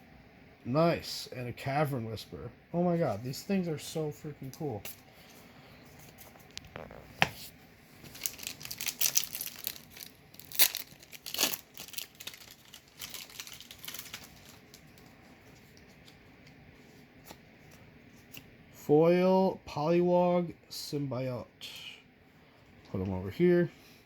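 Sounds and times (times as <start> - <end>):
foil wrapper tearing and crinkling: 8.1 - 15.1.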